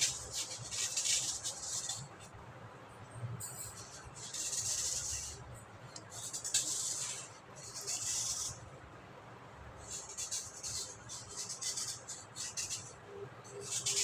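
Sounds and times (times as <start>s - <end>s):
tool scraping dry clay: 0.0s - 2.2s, 9.8s - 14.0s.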